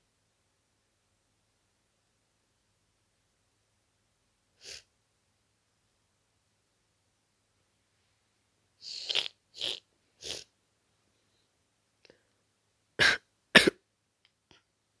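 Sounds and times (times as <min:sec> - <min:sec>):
person coughing: 0:13.0 - 0:13.8.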